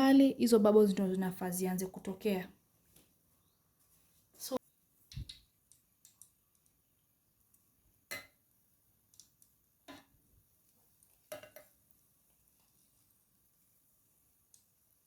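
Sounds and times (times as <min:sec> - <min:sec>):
utensils and pot clicking: 0:11.0 - 0:11.8.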